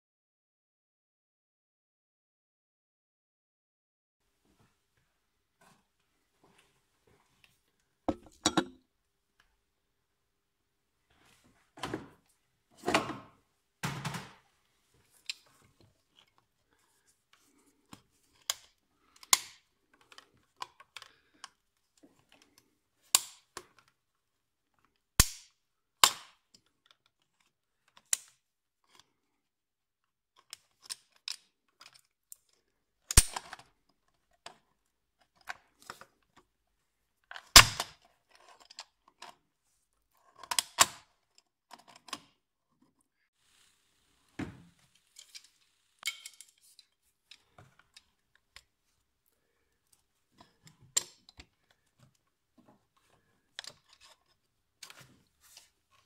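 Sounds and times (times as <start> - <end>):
hand tools clicking and knocking: 8.1 - 8.8.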